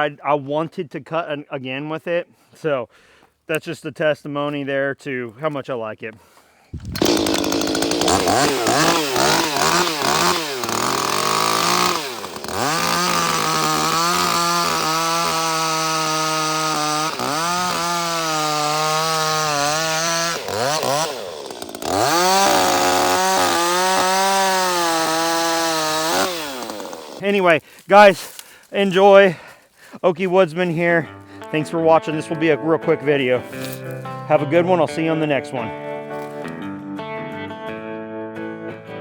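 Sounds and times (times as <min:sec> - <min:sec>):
chainsaw cutting through log: 0:06.7 - 0:28.4.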